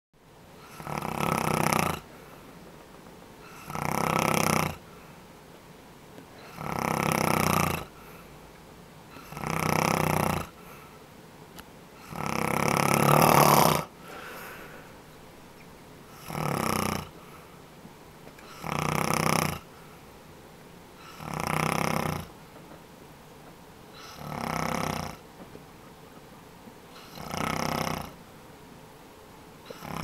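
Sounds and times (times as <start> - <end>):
man snoring: 0.6 - 2.1, 3.5 - 4.8, 6.4 - 8.0, 9.1 - 10.6, 12.0 - 14.9, 16.1 - 17.2, 18.4 - 19.7, 21.0 - 22.3, 24.0 - 25.2, 27.0 - 28.2, 29.7 - 30.0.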